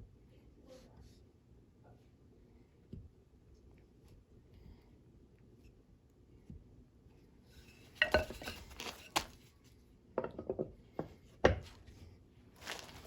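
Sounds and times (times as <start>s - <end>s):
hard objects knocking and clinking: 8.0s - 9.3s, 10.2s - 11.6s.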